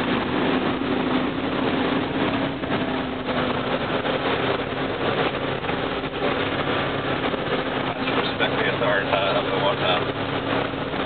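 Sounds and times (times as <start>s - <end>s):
rush of water: 0.0s - 11.0s
vehicle engine droning: 0.0s - 11.0s.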